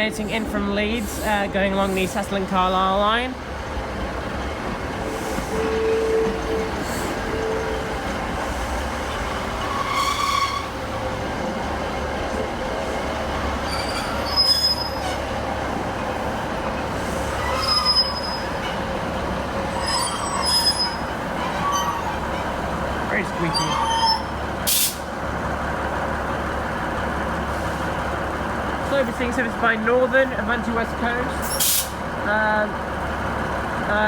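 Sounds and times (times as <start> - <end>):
train rumbling: 0.0 - 34.0
train wheels squealing: 9.2 - 10.8, 13.6 - 15.2, 17.1 - 18.8, 19.7 - 22.4, 23.4 - 24.4.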